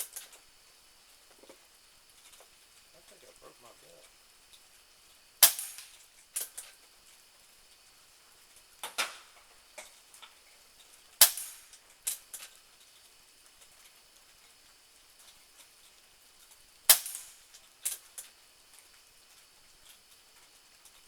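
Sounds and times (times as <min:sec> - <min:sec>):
air pistol shots: 0:05.4 - 0:05.9, 0:11.2 - 0:11.6, 0:16.9 - 0:17.3.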